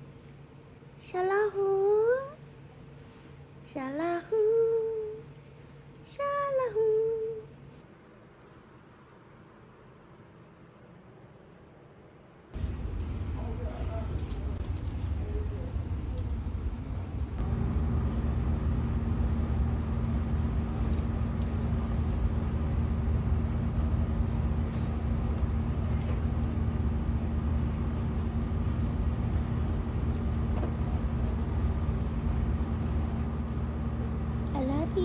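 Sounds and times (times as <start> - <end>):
vehicle cabin road noise: 12.6 - 35.0.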